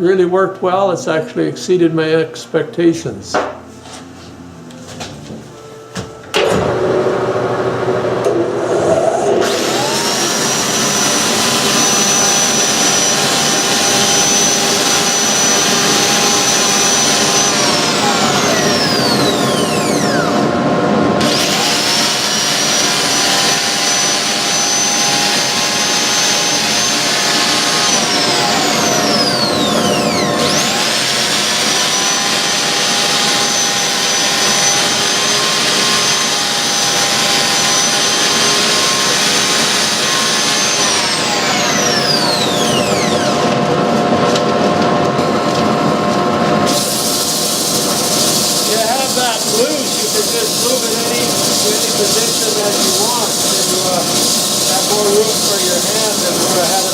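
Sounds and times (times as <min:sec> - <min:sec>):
motor whine: 0:05.5 - 0:56.6
dust collector air rushing: 0:06.7 - 0:11.7.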